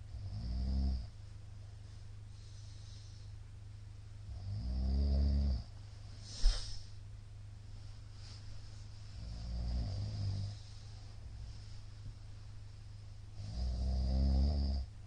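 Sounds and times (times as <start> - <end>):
man snoring: 0.1 - 1.1, 4.3 - 5.7, 9.2 - 10.6, 13.4 - 14.9.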